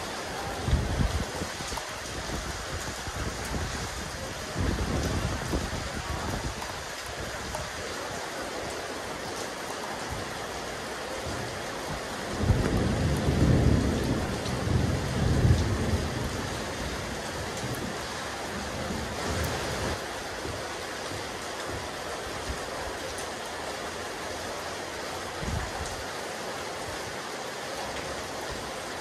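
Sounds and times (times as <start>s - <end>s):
rain falling on a rooftop: 0.0s - 29.0s
thunder rumble: 11.3s - 20.6s.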